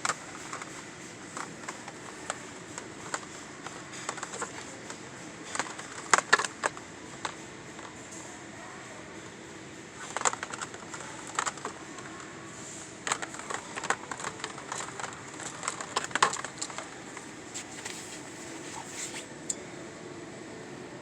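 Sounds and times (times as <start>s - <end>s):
plastic packages clicking and crinkling: 0.0s - 8.0s, 10.0s - 12.2s, 13.0s - 19.3s
store hum: 0.0s - 21.0s.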